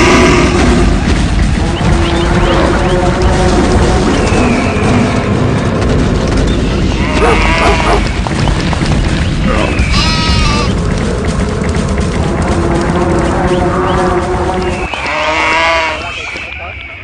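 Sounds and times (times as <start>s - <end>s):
rumble of running animals: 0.0s - 17.0s.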